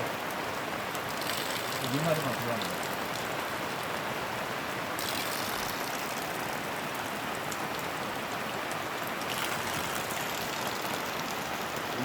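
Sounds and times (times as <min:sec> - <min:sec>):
stream running over rocks: 0:00.0 - 0:12.0.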